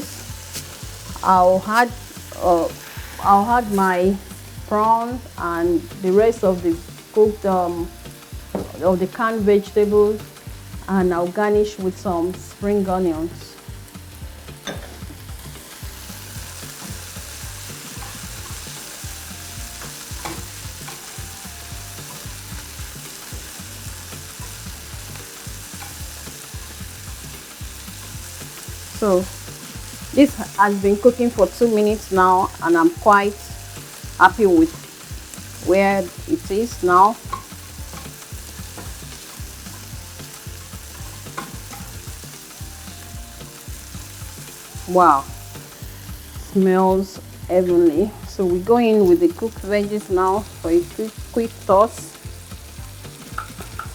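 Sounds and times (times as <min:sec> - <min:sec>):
food sizzling in a pan: 0:00.0 - 0:53.9
utensil clicking against pan: 0:16.5 - 0:21.4, 0:22.0 - 0:30.1, 0:37.0 - 0:42.7, 0:52.1 - 0:53.9.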